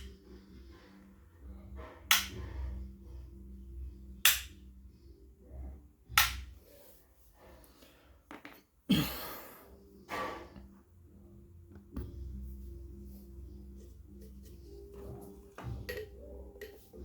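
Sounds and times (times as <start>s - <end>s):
sharp snaps: 2.1s - 2.4s, 4.2s - 4.6s, 6.2s - 6.5s.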